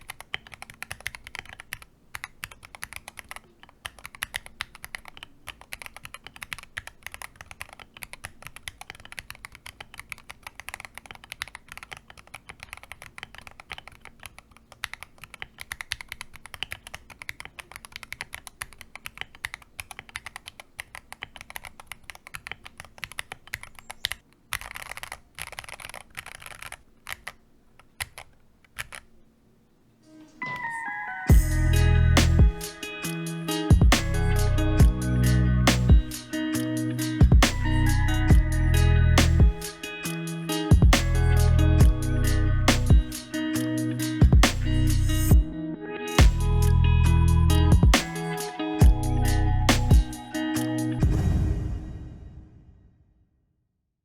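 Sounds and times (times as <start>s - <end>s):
mechanical keyboard typing: 0.0s - 29.1s.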